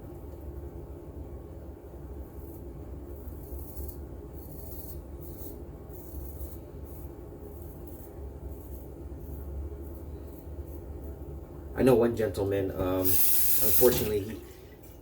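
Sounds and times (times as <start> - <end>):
razor scraping stubble: 2.2 - 11.4, 13.0 - 13.9.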